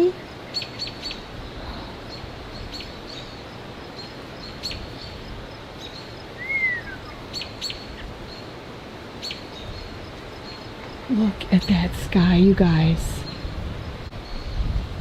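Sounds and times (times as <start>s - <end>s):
birds chirping: 0.0s - 14.8s
rushing background noise: 0.0s - 15.0s
bird whistle: 6.4s - 7.2s.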